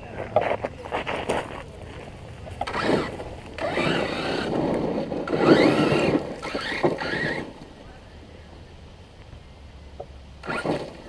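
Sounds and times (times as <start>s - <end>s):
radio-controlled car motor revving: 2.6s - 7.6s, 10.4s - 11.0s.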